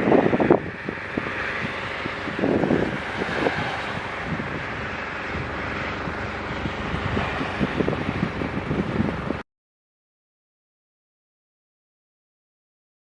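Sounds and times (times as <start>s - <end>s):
wind buffeting microphone: 0.0s - 9.4s.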